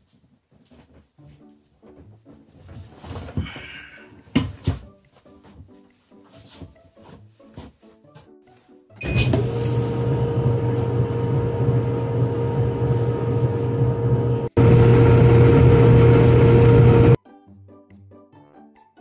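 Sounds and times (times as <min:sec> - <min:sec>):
clothes dryer humming: 0:09.0 - 0:17.2.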